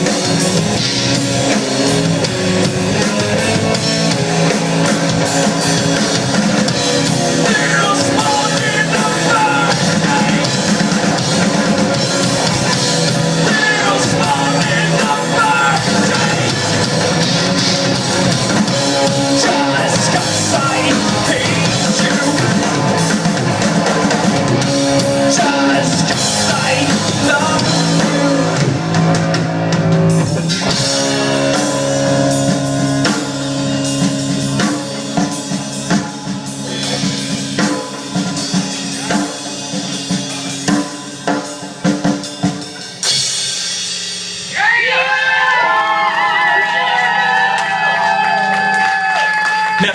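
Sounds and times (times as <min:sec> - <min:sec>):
rock band playing live: 0:00.0 - 0:49.9
person singing: 0:07.3 - 0:10.8, 0:12.3 - 0:16.9, 0:19.0 - 0:23.2, 0:24.9 - 0:29.0.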